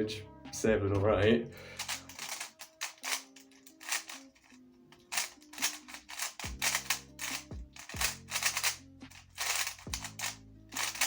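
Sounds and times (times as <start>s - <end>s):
background music: 0.0s - 11.0s
plastic cube clicking: 5.0s - 11.0s.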